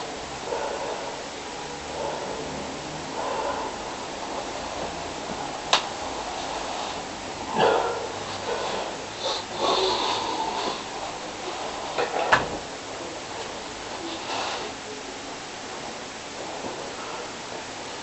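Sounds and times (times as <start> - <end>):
person snoring: 0.4 - 4.4, 6.2 - 12.0
noisy breath: 0.4 - 4.9, 6.0 - 12.2, 13.9 - 15.0.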